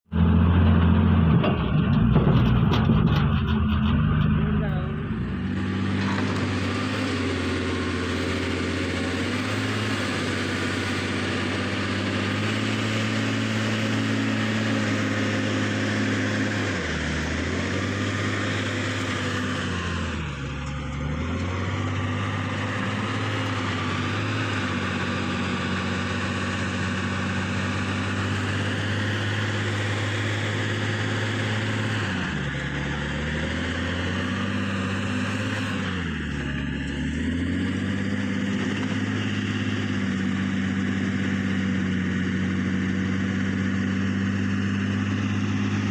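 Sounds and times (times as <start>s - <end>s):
diesel engine running at high revs: 0.0s - 45.9s.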